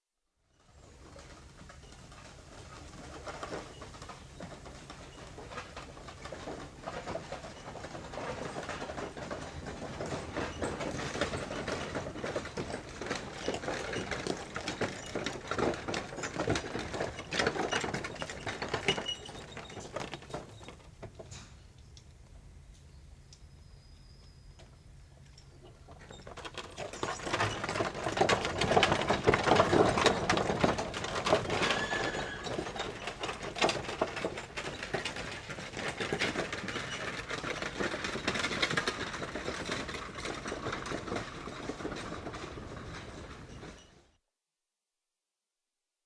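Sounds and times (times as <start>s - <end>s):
wooden cart rattling and creaking: 0.6s - 21.6s, 25.2s - 44.1s
horse hooves clopping: 0.6s - 44.1s.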